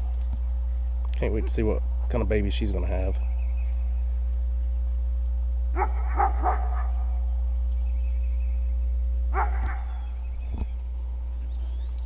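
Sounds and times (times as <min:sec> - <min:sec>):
steady low hum: 0:00.0 - 0:12.0
dog barking: 0:05.7 - 0:07.2, 0:09.3 - 0:10.2.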